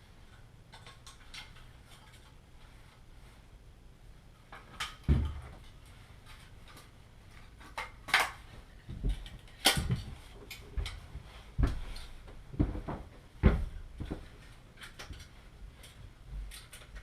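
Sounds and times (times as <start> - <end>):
heavy thumps: 9.8 - 14.3.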